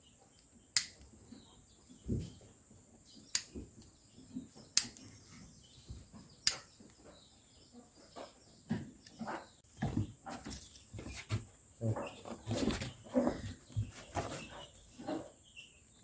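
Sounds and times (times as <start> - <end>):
light knocks and shuffling: 9.6 - 15.3.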